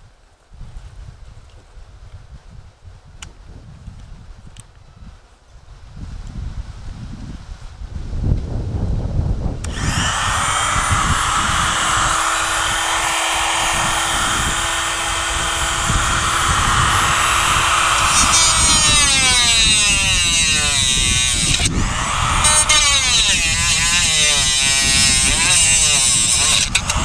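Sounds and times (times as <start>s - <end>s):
small electric power tool whining: 9.6s - 27.0s.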